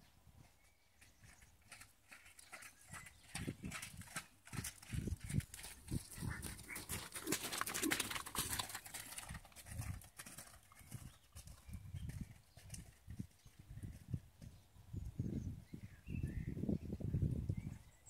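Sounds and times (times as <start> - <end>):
horse hoofbeats: 0.4 - 14.6.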